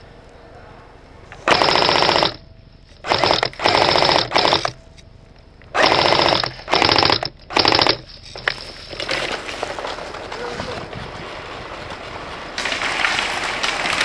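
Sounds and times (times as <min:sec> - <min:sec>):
airsoft rifle firing bursts: 0:01.4 - 0:02.4, 0:03.0 - 0:04.8, 0:05.7 - 0:08.1.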